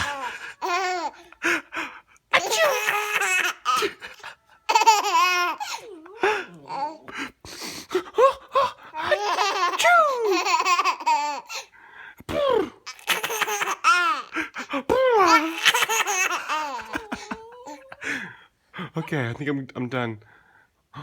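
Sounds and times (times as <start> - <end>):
baby laughing: 0.0 - 1.4, 2.4 - 7.1, 9.0 - 11.7, 12.9 - 18.2.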